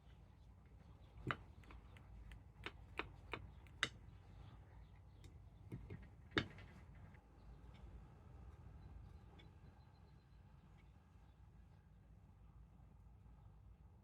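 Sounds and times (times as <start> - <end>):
small tools clicking and tapping: 1.2 - 4.1.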